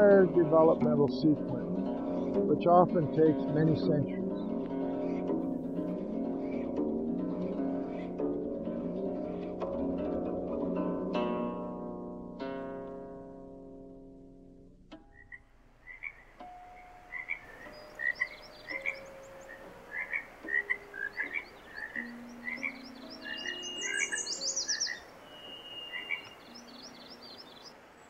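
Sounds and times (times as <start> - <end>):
low held frog notes: 0.0 - 27.4
frogs croaking: 3.8 - 8.3, 15.0 - 28.0
high chirps: 15.1 - 27.7.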